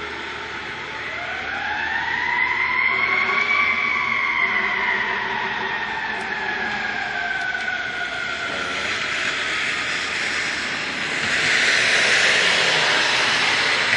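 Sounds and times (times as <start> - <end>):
fire engine siren wailing: 0.0 - 13.9
rush of passing truck: 8.2 - 13.9.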